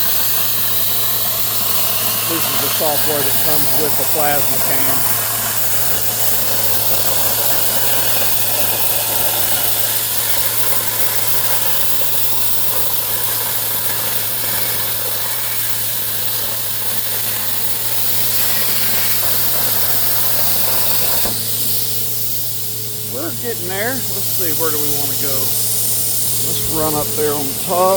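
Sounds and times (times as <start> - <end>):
plasma cutter hissing: 0.0 - 27.9.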